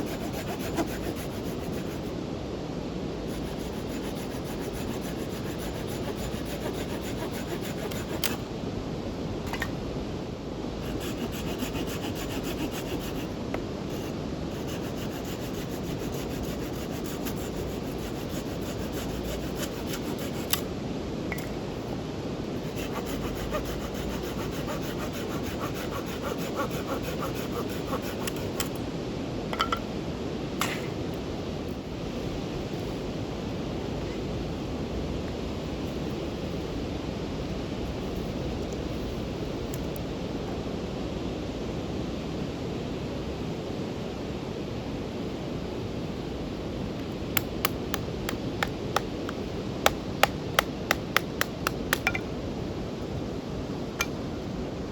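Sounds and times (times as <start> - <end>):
hand tool rasping wood: 0.0 - 2.1, 3.3 - 8.4, 10.8 - 13.3, 13.9 - 20.6, 22.6 - 28.7, 47.4 - 49.1, 49.8 - 52.2.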